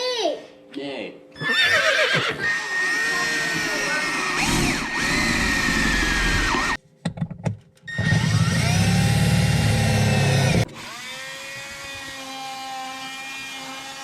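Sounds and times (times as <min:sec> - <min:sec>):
power tool whining: 0:02.1 - 0:06.8, 0:07.9 - 0:14.0.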